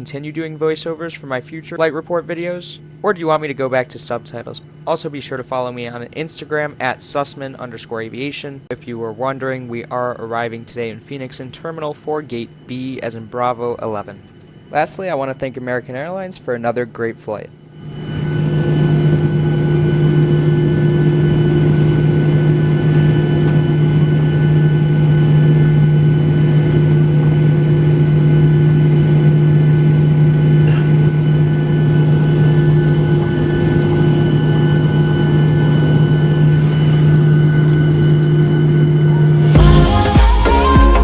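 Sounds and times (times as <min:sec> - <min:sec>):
airplane cabin drone: 0:00.0 - 0:41.0
high engine whines: 0:17.6 - 0:41.0.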